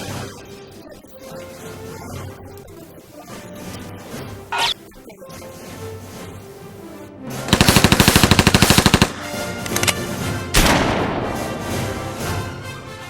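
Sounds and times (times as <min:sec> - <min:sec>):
background music: 0:00.0 - 0:13.0
rapid automatic gunfire: 0:07.5 - 0:09.9
loud crash-like hit: 0:10.6 - 0:12.5.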